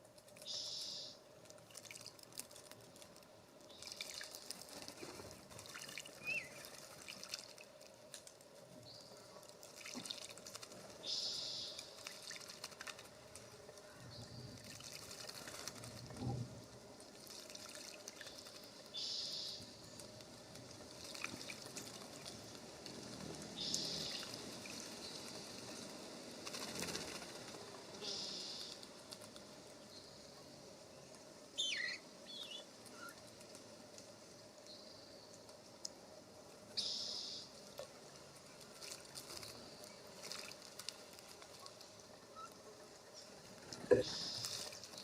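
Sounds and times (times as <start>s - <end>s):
faint small ticks: 0.0s - 30.0s, 31.0s - 36.0s, 36.8s - 45.0s
water trickling and splashing: 1.3s - 19.0s, 19.6s - 28.0s, 37.6s - 45.0s.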